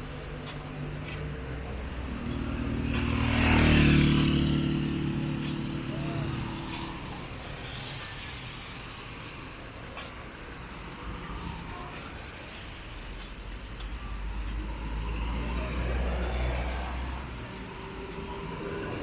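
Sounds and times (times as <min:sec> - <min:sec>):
vehicle passing by: 0:00.8 - 0:07.5, 0:14.2 - 0:19.0.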